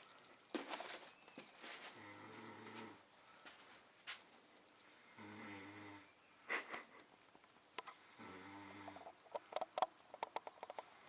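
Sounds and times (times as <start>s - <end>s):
man snoring: 5.1s - 6.1s, 8.0s - 9.0s.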